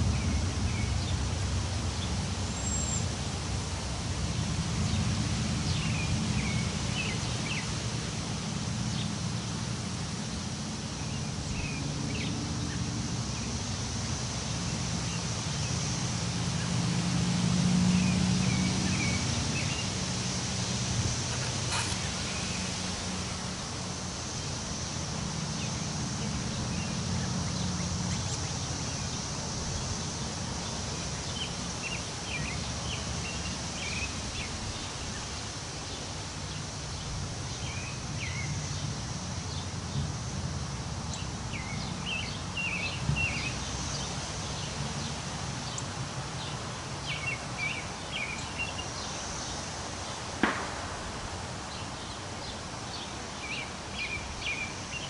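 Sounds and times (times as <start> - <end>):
wind blowing through trees: 0.0 - 55.0
small birds chirping: 21.0 - 40.1, 41.1 - 50.3, 51.7 - 55.0.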